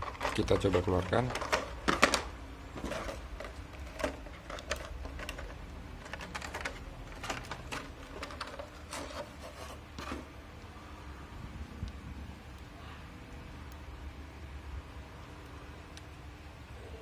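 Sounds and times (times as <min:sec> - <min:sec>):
plastic clicks: 0:00.0 - 0:09.2
plastic packaging crinkling: 0:00.0 - 0:10.4.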